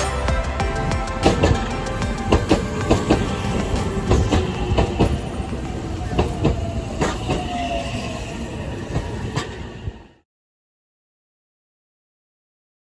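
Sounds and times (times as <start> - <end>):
train wheels clattering on rails: 0.4 - 9.8.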